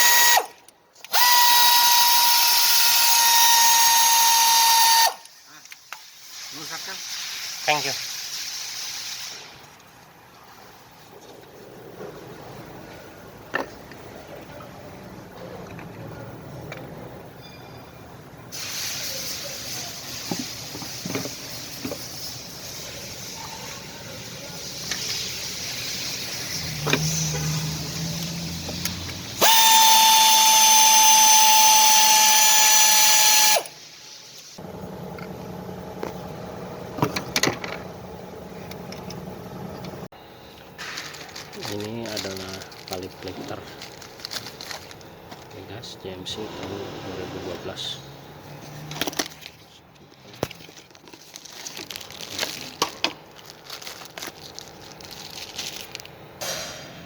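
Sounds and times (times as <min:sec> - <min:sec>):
power tool whining: 0:00.0 - 0:05.2, 0:26.6 - 0:33.7
steady hiss: 0:05.4 - 0:09.9, 0:18.5 - 0:29.4
power tool motor humming: 0:28.1 - 0:33.6.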